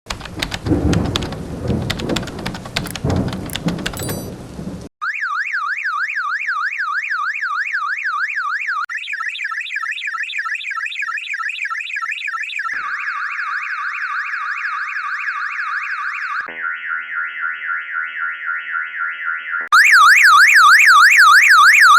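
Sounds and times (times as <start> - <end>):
rain: 0.1 - 4.9
thunder: 0.1 - 4.9
car alarm siren: 2.8 - 21.9.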